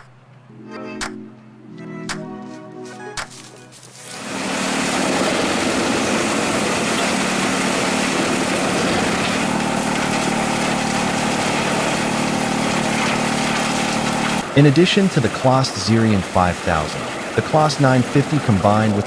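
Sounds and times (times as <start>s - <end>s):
wide mechanical hiss: 4.0s - 19.0s
heavy machine engine hum: 4.2s - 19.0s.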